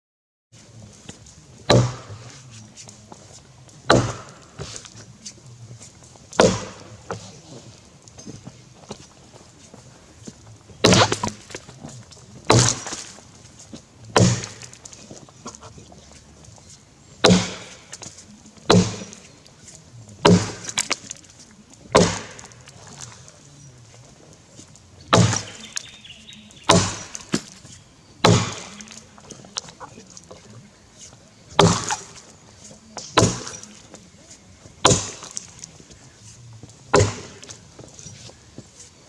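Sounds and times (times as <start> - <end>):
axe chopping log: 1.1 - 2.4, 3.8 - 5.1, 6.3 - 7.6, 10.8 - 13.4, 14.1 - 15.8, 17.2 - 19.4, 20.2 - 23.2, 25.1 - 30.4, 31.5 - 32.3, 33.0 - 34.0, 34.8 - 36.0, 36.9 - 38.2.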